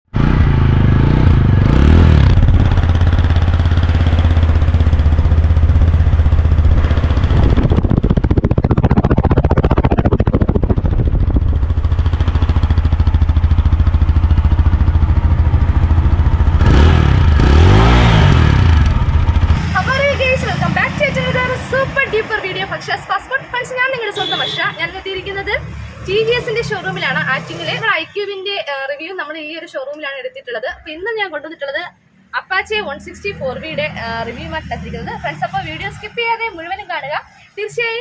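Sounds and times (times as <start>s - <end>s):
motorcycle engine revving: 0.1s - 21.8s.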